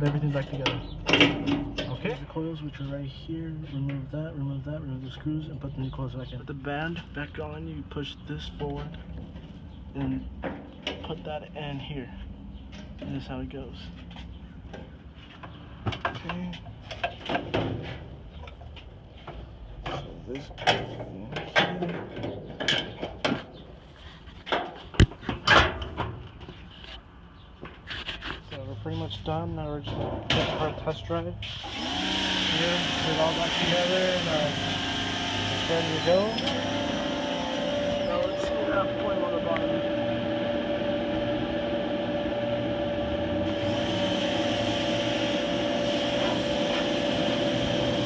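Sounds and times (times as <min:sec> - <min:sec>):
constant whine: 0:31.5 - 0:48.0
dryer motor and drum hum: 0:31.6 - 0:48.0.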